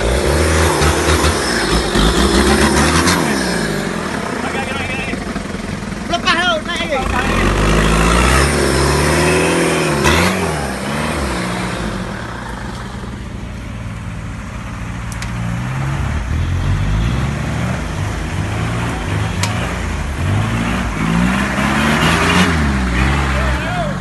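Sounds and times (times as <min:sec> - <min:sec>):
off-road vehicle engine revving: 0:00.0 - 0:24.0.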